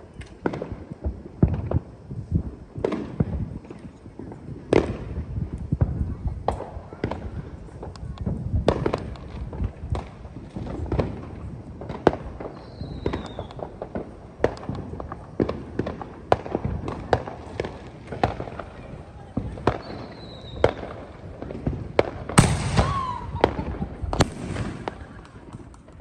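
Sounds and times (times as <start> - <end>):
fireworks bangs and crackles: 0.0 - 26.0
firework falling whistle: 12.5 - 13.7, 19.8 - 20.8, 22.4 - 25.3.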